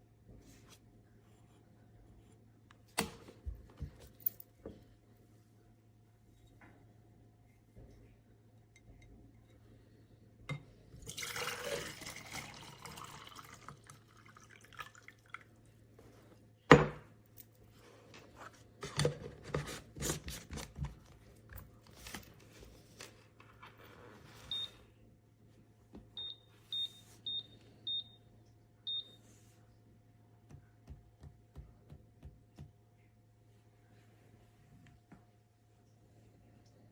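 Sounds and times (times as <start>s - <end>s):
water pouring: 11.0s - 15.5s.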